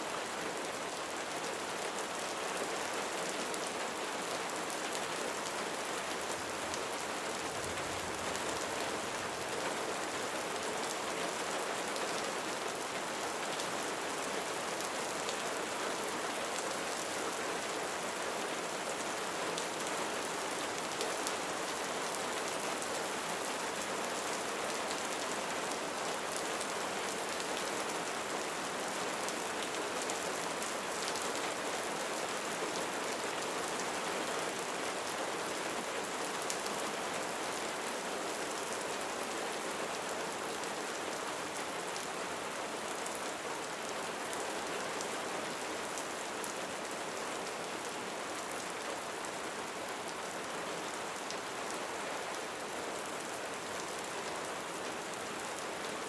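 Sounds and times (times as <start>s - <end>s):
rain falling on a roof: 0.0s - 56.0s.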